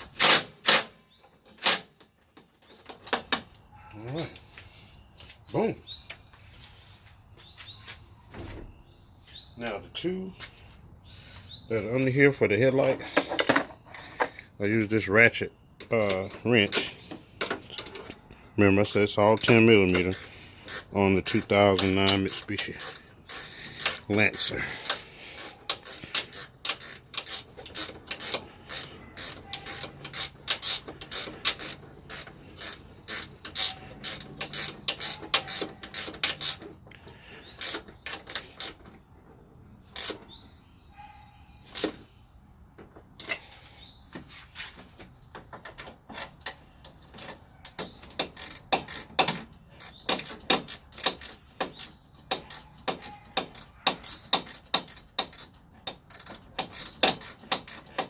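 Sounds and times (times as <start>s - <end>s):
ratcheting wrench clicking: 19.4s - 36.7s, 37.6s - 38.8s, 48.1s - 58.0s.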